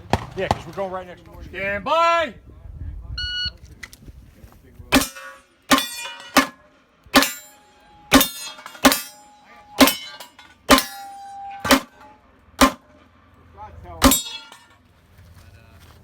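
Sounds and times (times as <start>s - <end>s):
pistol shots: 0.0s - 0.8s, 7.2s - 7.5s
ringing tone after shots: 7.2s - 12.1s.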